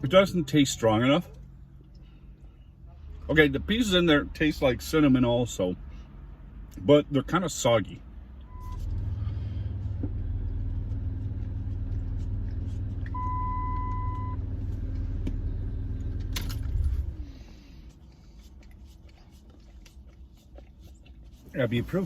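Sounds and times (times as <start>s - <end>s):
vehicle engine running: 8.5s - 18.5s
steady beep: 13.1s - 14.4s.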